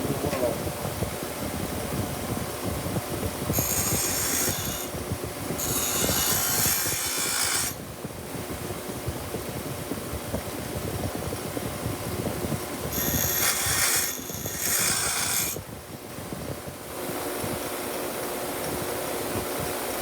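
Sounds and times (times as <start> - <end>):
power grinder running: 3.5 - 4.9, 5.6 - 7.8, 12.9 - 15.6.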